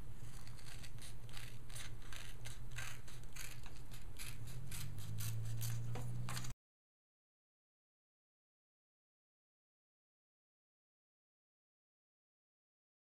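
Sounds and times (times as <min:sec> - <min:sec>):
scissors snipping vinyl: 0:00.2 - 0:06.5.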